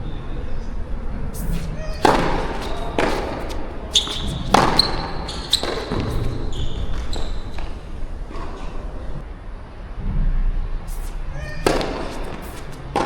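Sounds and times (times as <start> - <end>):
shoes squeaking on court: 1.3 - 9.2, 10.9 - 13.0
tennis ball hits and bounces: 1.4 - 9.2, 11.4 - 13.0.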